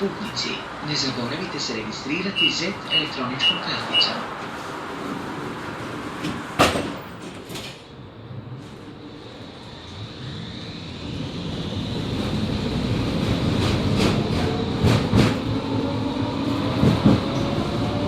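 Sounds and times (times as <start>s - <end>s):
tram motors whining: 0.0s - 18.0s
tram running rumble: 0.0s - 18.0s
tram doors shutting knock: 2.2s - 8.0s, 12.0s - 15.8s.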